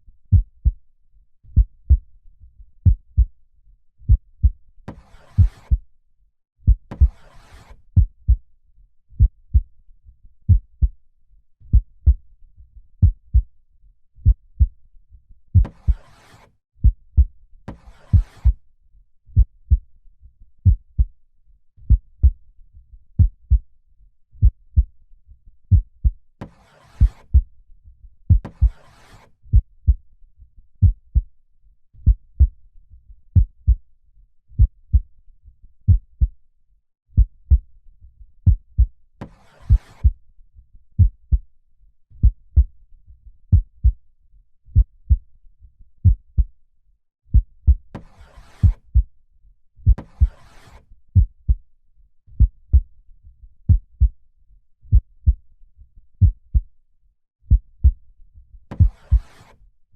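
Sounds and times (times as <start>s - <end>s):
slow heartbeat: 0.3s - 0.8s, 1.5s - 2.1s, 2.8s - 3.4s, 4.1s - 5.8s, 6.7s - 7.2s, 9.2s - 9.7s, 10.5s - 11.0s, 11.7s - 12.2s, 13.0s - 13.5s, 14.2s - 14.8s, 15.6s - 16.1s, 16.8s - 17.3s, 18.1s - 18.6s, 19.4s - 19.9s, 20.6s - 21.1s, 21.9s - 22.4s, 23.2s - 23.6s, 24.4s - 24.9s, 27.0s - 27.5s, 28.3s - 28.8s, 29.5s - 30.0s, 30.8s - 31.3s, 32.0s - 32.6s, 33.4s - 33.8s, 34.6s - 35.1s, 35.9s - 36.3s, 37.2s - 37.7s, 38.4s - 38.9s, 39.6s - 40.2s, 41.0s - 41.4s, 42.2s - 42.7s, 43.5s - 44.0s, 44.8s - 45.2s, 46.0s - 46.5s, 47.3s - 49.1s, 49.8s - 50.4s, 51.2s - 51.6s, 52.4s - 52.9s, 53.6s - 54.2s, 54.9s - 55.4s, 56.2s - 56.7s, 57.5s - 58.0s, 58.7s - 59.3s.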